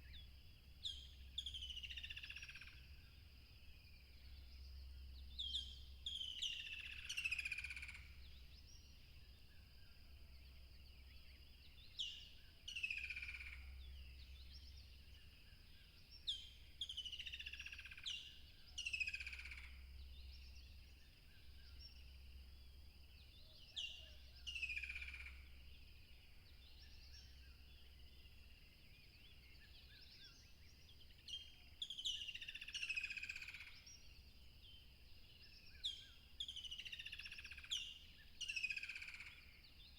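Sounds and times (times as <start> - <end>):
songbird whistling song: 5.3 - 8.0, 29.0 - 34.8, 35.4 - 39.9.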